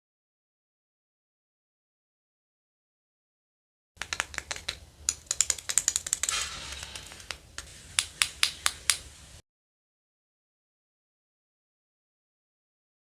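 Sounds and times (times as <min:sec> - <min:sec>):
toy pieces clicking and tapping: 0:04.0 - 0:09.1.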